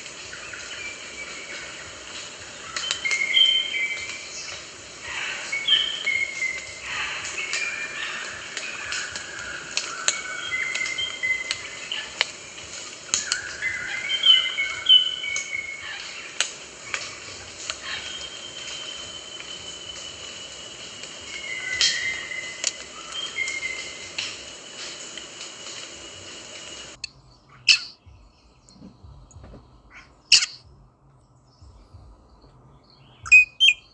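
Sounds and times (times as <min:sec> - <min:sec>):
dense hiss: 0:00.0 - 0:30.7
parrots whistling: 0:00.8 - 0:28.0, 0:29.9 - 0:30.6, 0:33.2 - 0:33.9
parrot calling in sharp notes: 0:27.6 - 0:28.0, 0:30.3 - 0:30.7, 0:33.3 - 0:33.9.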